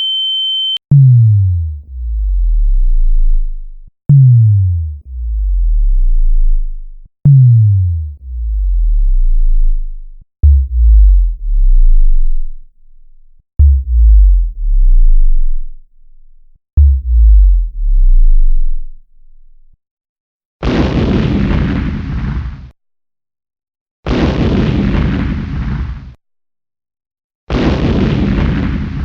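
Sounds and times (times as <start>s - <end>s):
synthesized deep bass effect: 0.9s - 19.8s.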